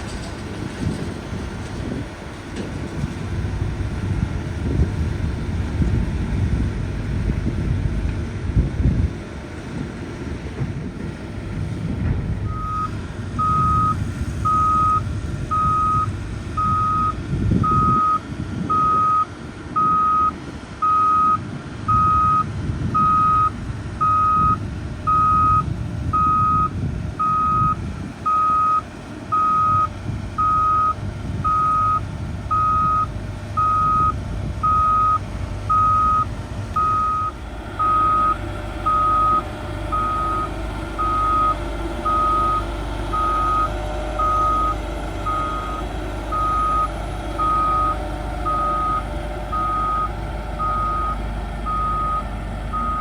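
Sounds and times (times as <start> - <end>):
diesel engine rumble: 0.0 - 53.0
back-up alarm beeping: 12.5 - 53.0.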